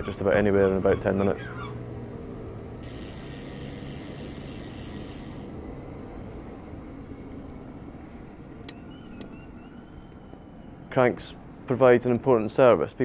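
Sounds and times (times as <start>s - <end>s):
traffic rumble: 0.0s - 13.0s
hiss: 2.8s - 5.6s.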